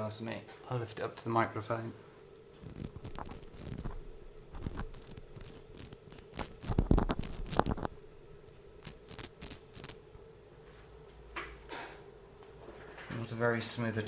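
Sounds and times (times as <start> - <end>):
gear part scratching and crunching: 2.6 - 7.9, 8.8 - 10.0.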